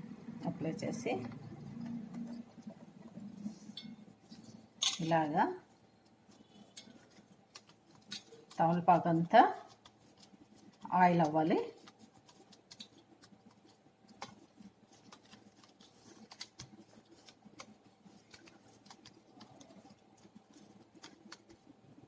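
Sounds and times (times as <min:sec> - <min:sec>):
fingers rubbing leaves: 0:06.3 - 0:21.8.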